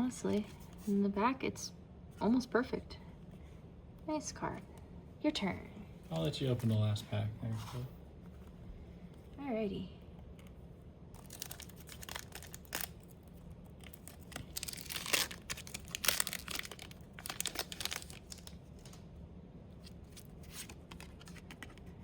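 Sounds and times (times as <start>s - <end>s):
foil wrapper tearing and crinkling: 11.1s - 19.0s.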